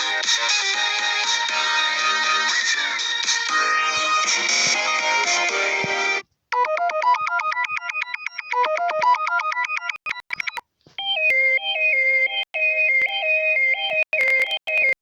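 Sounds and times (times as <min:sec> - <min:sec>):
musical phone ringtone: 0:00.4 - 0:15.0
fast electronic arpeggio melody: 0:06.5 - 0:10.6.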